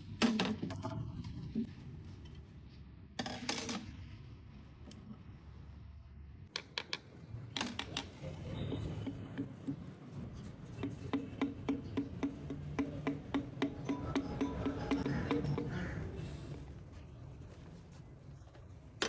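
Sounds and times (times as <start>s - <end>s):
background music with steady beat: 10.8s - 16.2s.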